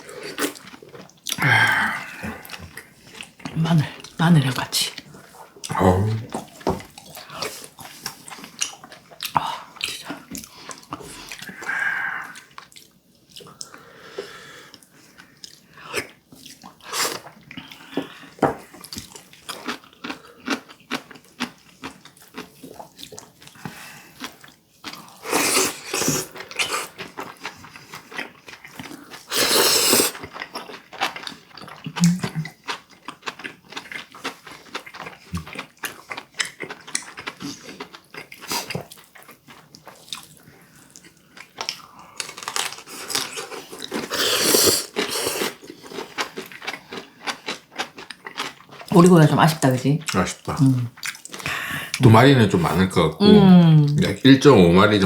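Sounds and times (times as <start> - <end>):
chewing and biting: 14.8 - 29.3, 30.1 - 48.9, 50.1 - 52.0.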